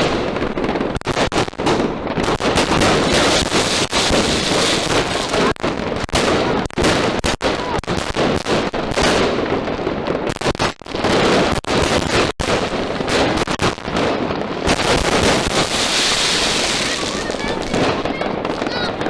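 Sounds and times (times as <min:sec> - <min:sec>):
fireworks barrage of shots and bursts: 0:00.0 - 0:19.0.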